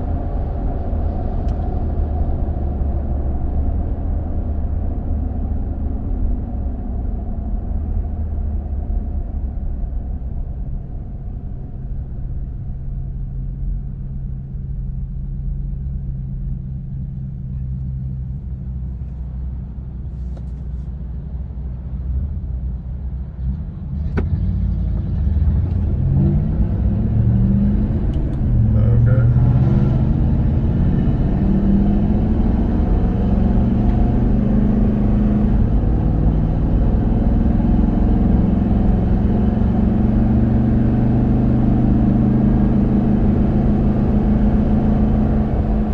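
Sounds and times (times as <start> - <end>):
road and tire noise in car: 0.0 - 45.9
engine accelerating: 24.0 - 45.9.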